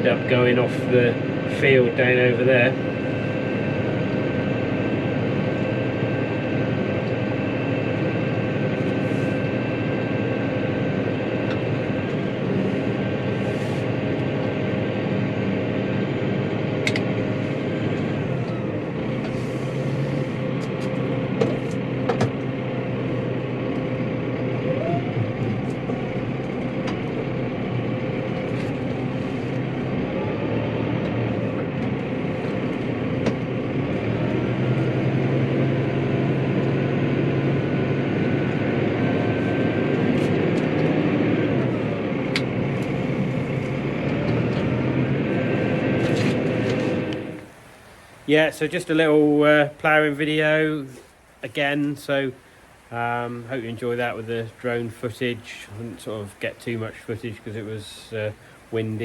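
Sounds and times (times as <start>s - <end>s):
tractor engine under load: 0.0s - 48.2s.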